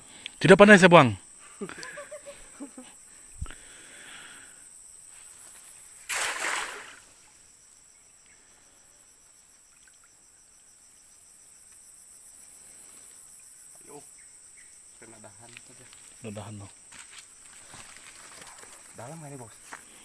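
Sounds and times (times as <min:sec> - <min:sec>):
insects buzzing: 0:00.0 - 0:20.0
net splashing on water: 0:06.0 - 0:07.2.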